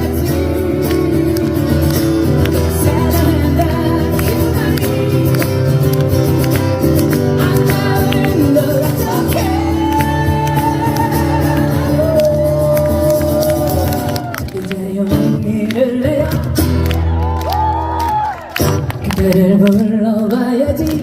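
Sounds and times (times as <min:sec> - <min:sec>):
person singing long notes: 0:00.0 - 0:06.6, 0:07.2 - 0:16.6.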